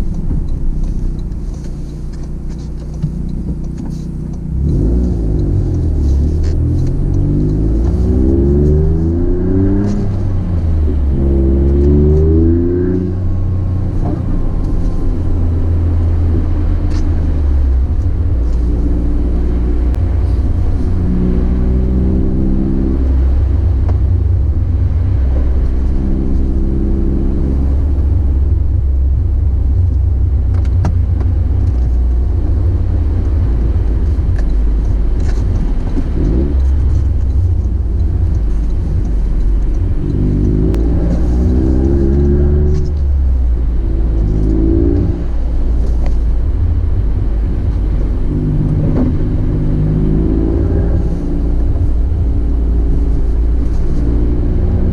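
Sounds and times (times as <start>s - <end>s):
car engine rumbling through exhaust: 0.0s - 54.9s.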